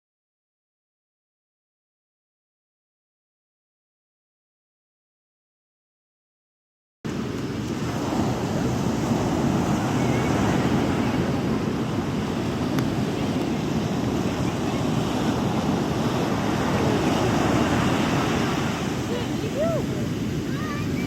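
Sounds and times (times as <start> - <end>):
sea waves washing onto beach: 7.1 - 21.0
wind buffeting microphone: 7.1 - 21.0.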